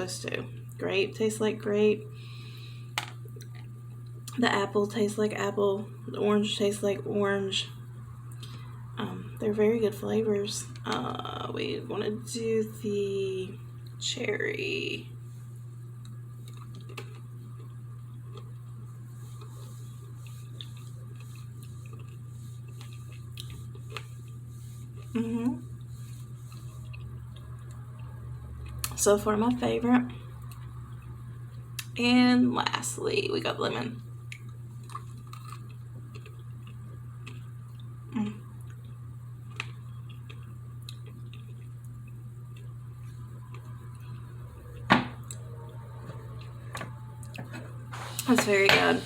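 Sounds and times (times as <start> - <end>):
low hum: 0.0 - 49.0
chewing candy: 19.3 - 29.0, 34.3 - 38.0, 38.6 - 44.2.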